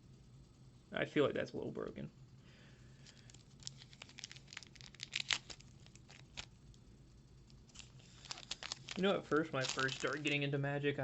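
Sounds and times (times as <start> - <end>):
foil wrapper and cards crinkling: 3.0 - 6.6, 7.6 - 10.5.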